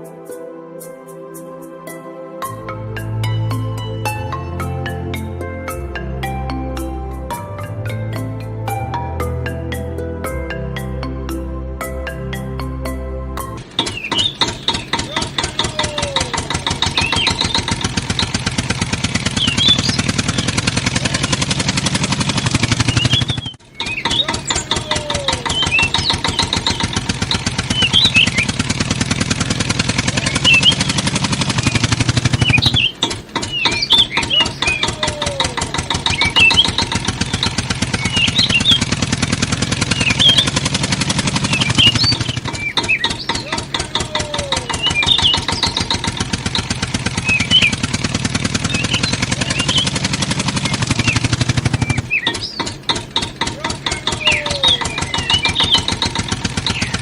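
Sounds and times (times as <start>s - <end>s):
tractor engine chugging: 13.4s - 57.0s.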